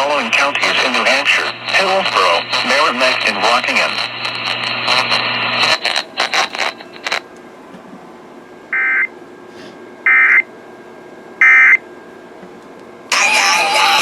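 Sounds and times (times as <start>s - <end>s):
radio static crackling: 0.0s - 7.3s.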